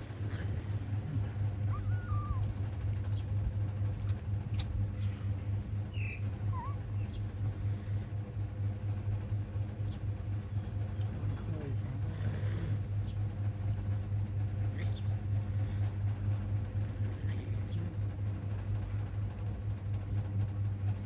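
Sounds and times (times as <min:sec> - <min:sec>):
steady low hum: 0:00.0 - 0:21.0
kittens squeaking: 0:01.6 - 0:02.5, 0:05.9 - 0:07.8.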